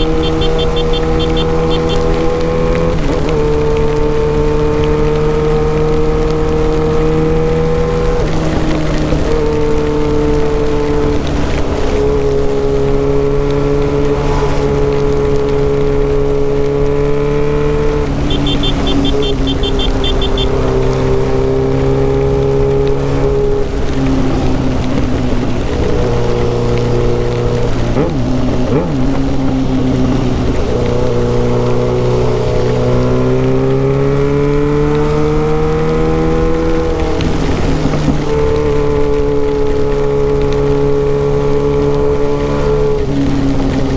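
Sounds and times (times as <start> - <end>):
motorcycle engine unmuffled exhaust: 0.0 - 43.9
wind and rain hiss: 0.0 - 43.9.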